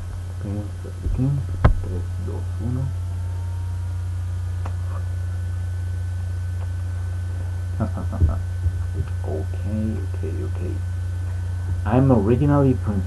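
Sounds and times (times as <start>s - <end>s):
faint hiss: 0.0s - 3.0s
steady low hum: 0.0s - 13.0s.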